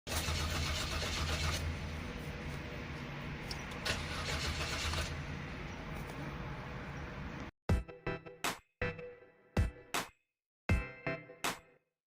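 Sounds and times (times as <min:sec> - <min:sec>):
starter motor cranking engine: 0:00.1 - 0:01.8, 0:03.7 - 0:05.2.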